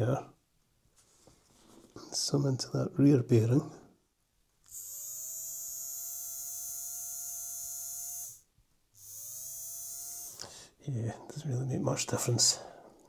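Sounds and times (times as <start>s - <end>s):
small electric motor whining: 4.7s - 10.5s.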